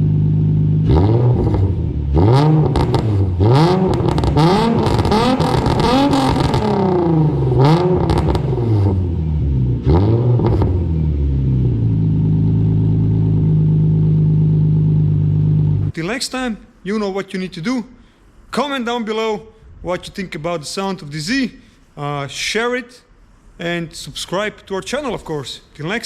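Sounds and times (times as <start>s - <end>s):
loud car engine revving and idling: 0.0s - 15.9s
exhaust pops: 0.8s - 15.9s.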